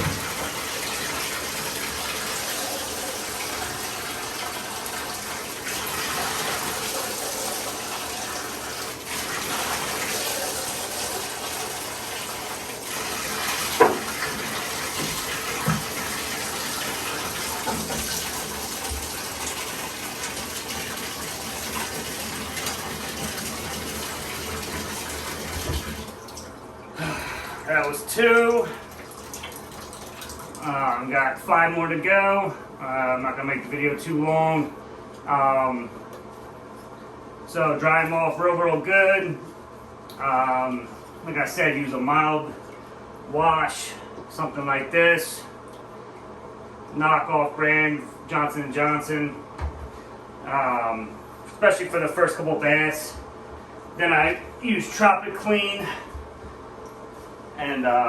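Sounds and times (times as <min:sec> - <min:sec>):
tap water running into bathtub: 0:00.0 - 0:31.1.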